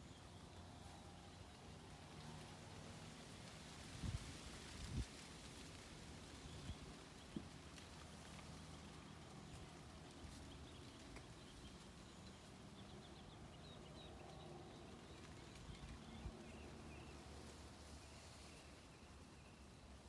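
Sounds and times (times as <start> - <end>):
low steady background rumble: 0.0 - 20.0
faint birds chirping: 4.9 - 20.0.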